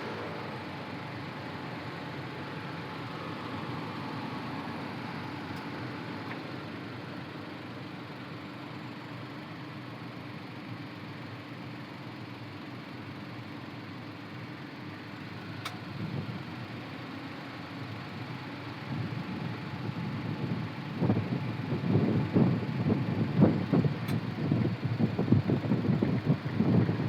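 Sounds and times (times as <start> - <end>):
wind buffeting microphone: 20.5 - 27.0.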